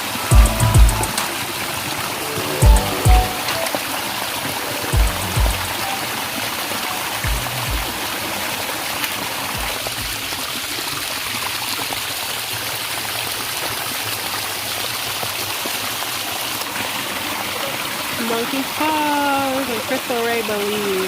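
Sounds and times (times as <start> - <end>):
water rushing from small waterfall: 0.0 - 0.4, 1.1 - 21.0
low thumps: 5.0 - 5.7.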